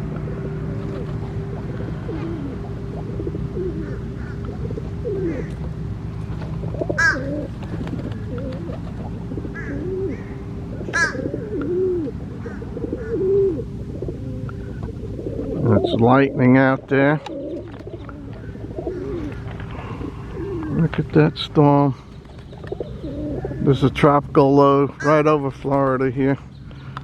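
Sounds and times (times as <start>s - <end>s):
doves cooing: 0.0s - 27.0s
low hum: 0.0s - 27.0s
sharp bird calls: 6.7s - 20.8s, 22.0s - 24.0s.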